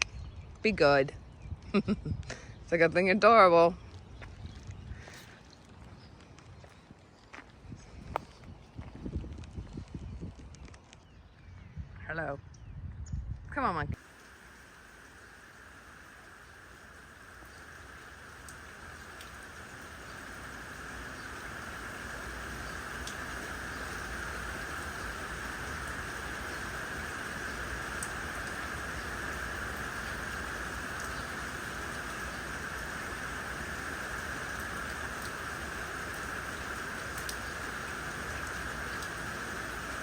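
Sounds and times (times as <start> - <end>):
steady rain hiss: 1.7 - 7.5, 13.9 - 40.0
sharp ticks of raindrops: 3.9 - 7.5, 14.0 - 40.0.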